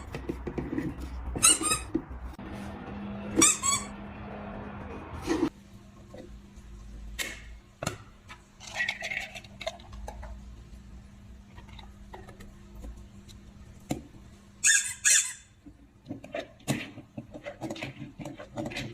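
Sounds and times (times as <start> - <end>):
dog toy squeaking: 1.4 - 2.0, 3.4 - 3.9, 14.6 - 15.5.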